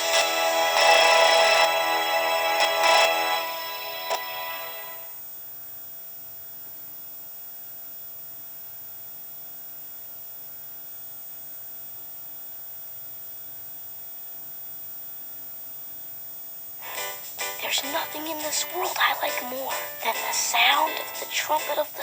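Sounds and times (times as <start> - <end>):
music: 0.0 - 5.2, 16.8 - 22.0
videotape hum and hiss: 0.0 - 22.0.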